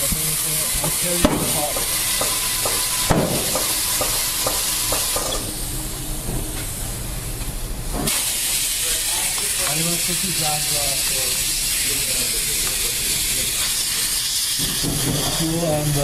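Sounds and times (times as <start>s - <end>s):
compressed air hissing from hose: 0.0s - 5.7s, 8.0s - 16.0s.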